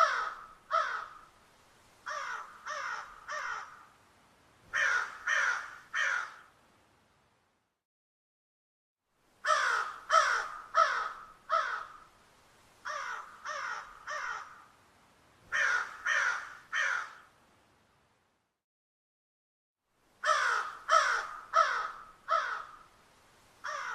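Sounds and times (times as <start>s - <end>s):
crows cawing: 0.0s - 1.3s, 2.0s - 4.0s, 4.7s - 6.5s, 9.4s - 12.1s, 12.8s - 14.8s, 15.5s - 17.3s, 20.2s - 22.9s, 23.6s - 23.9s.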